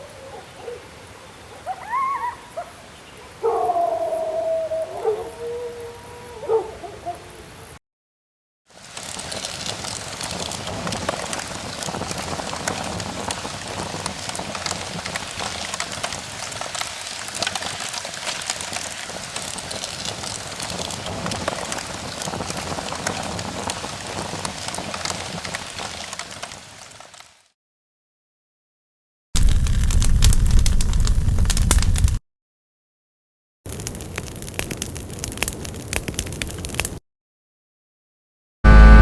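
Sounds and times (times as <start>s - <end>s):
animal howl: 0.0s - 1.0s, 1.6s - 7.7s
steady rain: 8.8s - 27.5s, 29.4s - 32.2s, 33.7s - 37.0s.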